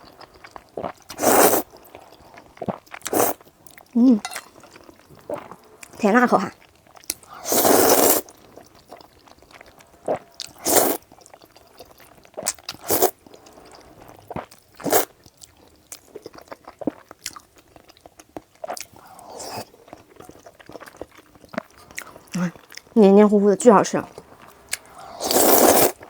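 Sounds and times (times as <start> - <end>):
noodle slurps: 0.8 - 1.7, 3.0 - 3.4, 7.3 - 8.3, 10.6 - 11.0, 12.8 - 13.1, 24.9 - 26.0.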